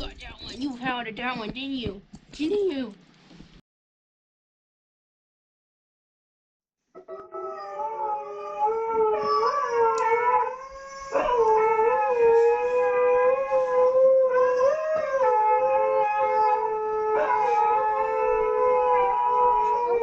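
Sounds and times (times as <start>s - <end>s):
dogs howling together: 7.0s - 20.0s.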